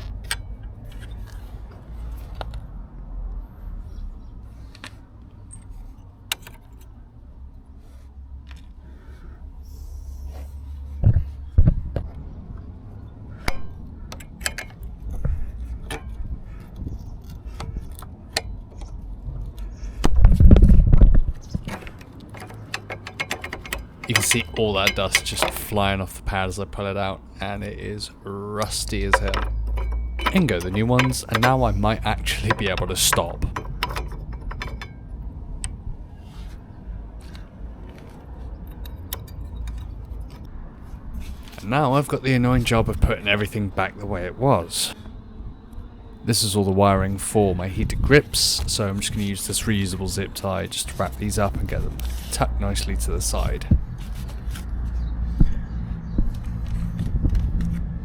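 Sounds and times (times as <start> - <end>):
metallic clicks and scrapes: 5.5 - 7.0, 13.4 - 19.8, 21.4 - 36.6, 37.2 - 40.5, 48.5 - 55.0
metal tool clicks and clinks: 13.5 - 14.8, 21.6 - 26.7, 28.6 - 35.8.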